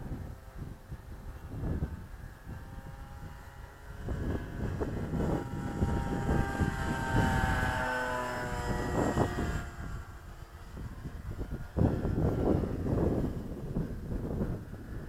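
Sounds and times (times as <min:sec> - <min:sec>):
model plane motor whine: 0:00.0 - 0:15.0
wind buffeting microphone: 0:00.0 - 0:15.0.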